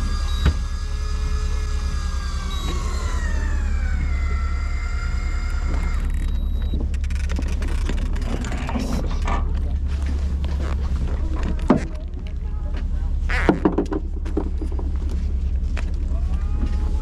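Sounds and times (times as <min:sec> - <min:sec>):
electric fishing reel motor whine: 0:00.0 - 0:08.2
boat engine humming: 0:00.0 - 0:17.0
clicks and rattles: 0:06.0 - 0:16.1.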